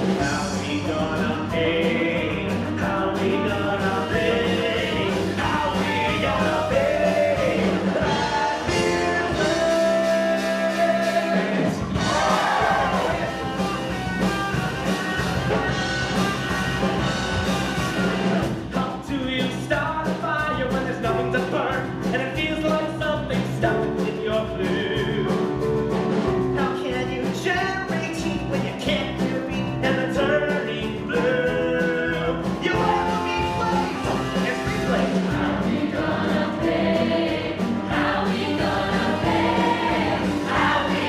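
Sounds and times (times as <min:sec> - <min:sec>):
people singing: 0:00.0 - 0:13.7, 0:26.6 - 0:41.0
live rock band playing: 0:00.0 - 0:41.0.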